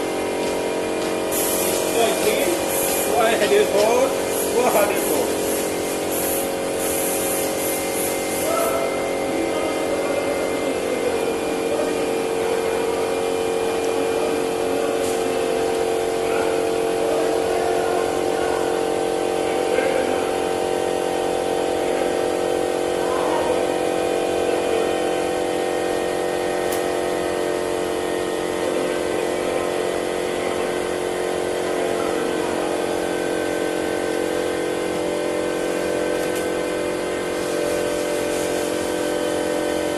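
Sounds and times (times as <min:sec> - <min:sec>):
steady machine hum: 0:00.0 - 0:39.9.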